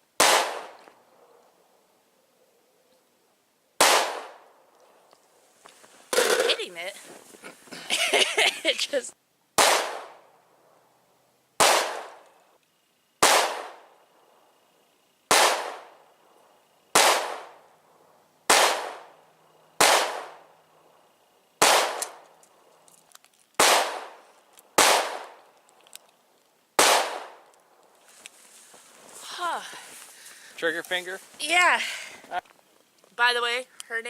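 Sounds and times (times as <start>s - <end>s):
pistol shots: 0.2s - 0.8s, 3.8s - 4.5s, 9.6s - 10.2s, 11.6s - 12.3s, 13.2s - 13.9s, 15.3s - 16.0s, 16.9s - 17.6s, 18.5s - 19.2s, 19.8s - 20.5s, 21.6s - 22.2s, 23.6s - 24.2s, 24.8s - 25.4s, 26.8s - 27.4s.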